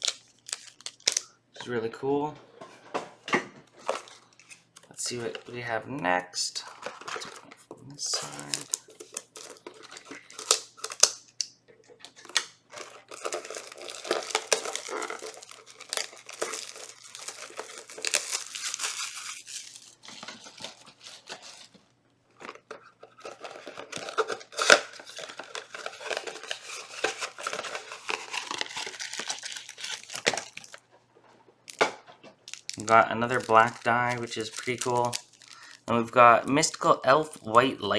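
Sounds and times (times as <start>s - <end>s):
packaging crinkling: 0.0s - 1.4s, 3.7s - 37.9s
cardboard ripping: 12.2s - 21.7s, 23.6s - 30.8s.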